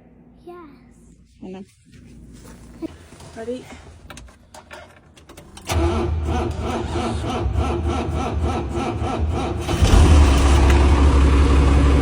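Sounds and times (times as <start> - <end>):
diesel engine cranking: 4.0 - 12.0
diesel engine idling: 5.7 - 12.0.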